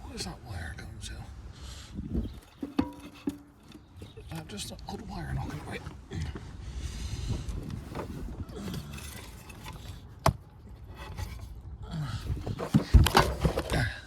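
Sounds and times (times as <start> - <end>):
hands rummaging among wiring: 2.3 - 4.2, 7.4 - 11.6, 12.2 - 14.0.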